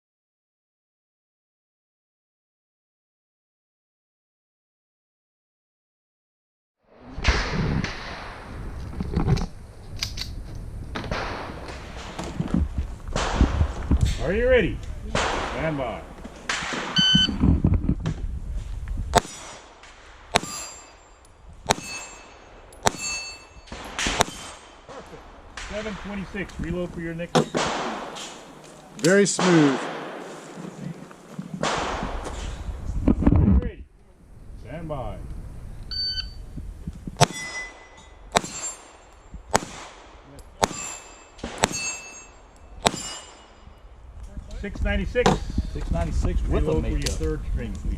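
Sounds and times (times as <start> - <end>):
pistol shots: 13.2 - 13.7, 15.1 - 17.1, 19.1 - 21.0, 21.6 - 26.2, 27.3 - 30.6, 31.6 - 32.5, 37.2 - 42.1, 42.8 - 43.6
steel targets ringing: 20.3 - 24.9, 37.2 - 39.2, 40.6 - 43.8.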